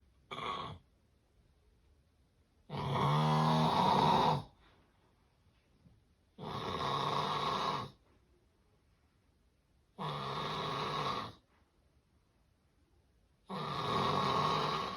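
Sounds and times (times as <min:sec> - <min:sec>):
loud snoring: 0:00.3 - 0:00.8, 0:02.7 - 0:04.5, 0:06.4 - 0:08.0, 0:10.0 - 0:11.4, 0:13.5 - 0:14.9.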